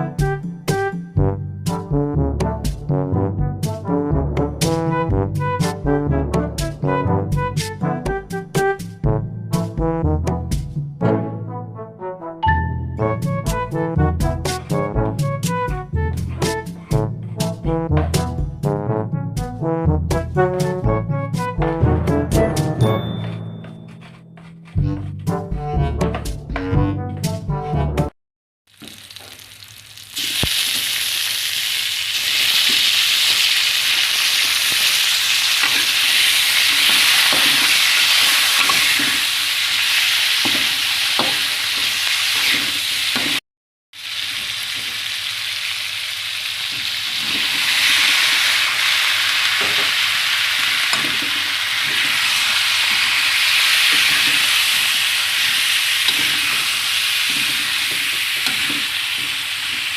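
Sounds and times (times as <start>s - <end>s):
utensil scraping pan: 23.0s - 25.4s, 35.6s - 39.4s, 40.0s - 43.4s
food sizzling in oil: 28.7s - 43.4s, 44.0s - 59.9s.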